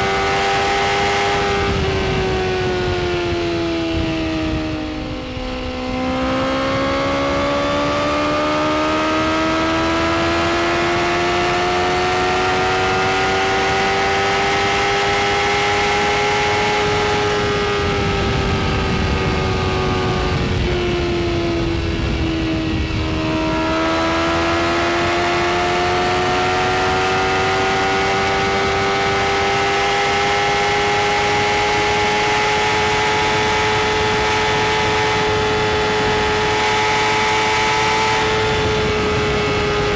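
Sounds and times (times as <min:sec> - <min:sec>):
motorcycle engine at high revs: 0:00.0 - 0:39.9
wind rushing: 0:16.8 - 0:26.4.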